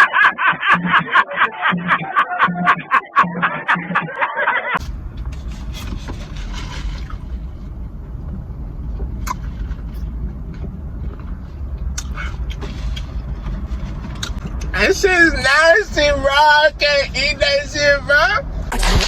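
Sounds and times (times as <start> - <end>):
steady low rumble: 4.8 - 19.0.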